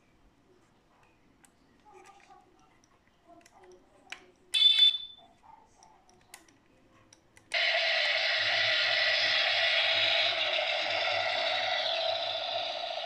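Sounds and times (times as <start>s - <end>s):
electronic horn beep: 4.6s - 5.2s.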